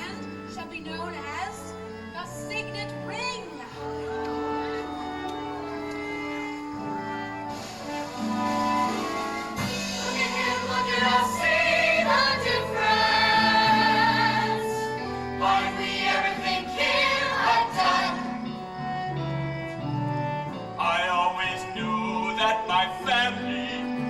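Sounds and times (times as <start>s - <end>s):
instrumental accompaniment: 0.0s - 24.0s
group of voices singing: 9.6s - 18.5s, 20.8s - 24.0s.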